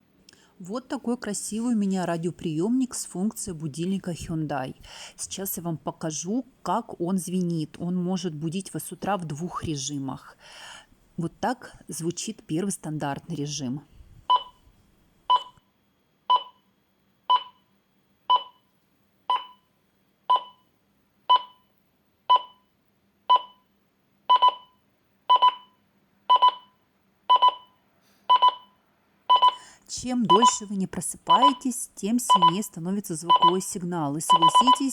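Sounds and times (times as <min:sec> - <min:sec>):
clock radio alarm beeping: 0:29.3 - 0:29.6, 0:30.3 - 0:30.7, 0:31.3 - 0:34.9.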